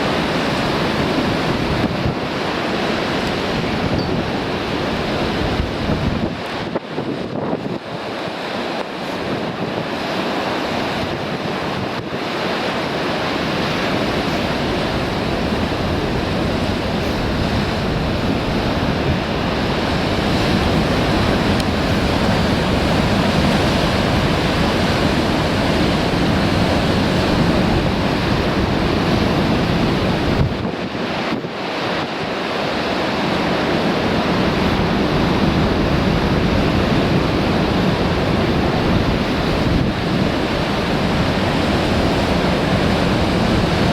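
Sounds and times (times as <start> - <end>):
wind buffeting microphone: 0.0 - 8.2, 9.0 - 12.3, 13.2 - 43.9
surf pounding rocky shore: 0.0 - 43.9.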